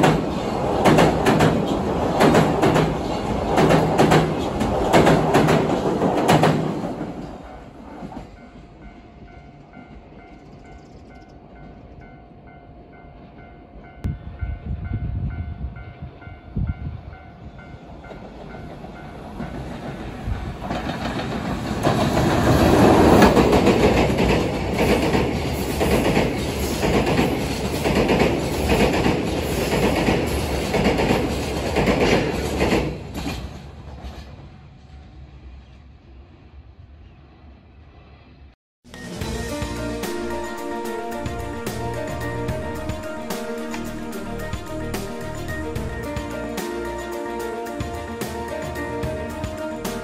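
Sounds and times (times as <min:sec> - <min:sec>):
train wheels clattering: 0:00.0 - 0:08.6, 0:18.1 - 0:35.0.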